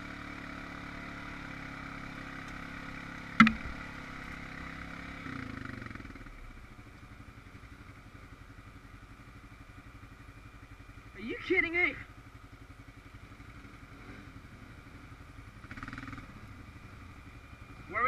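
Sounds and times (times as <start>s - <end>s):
atv engine running: 0.0s - 18.0s
sharp engine knock: 3.4s - 3.9s.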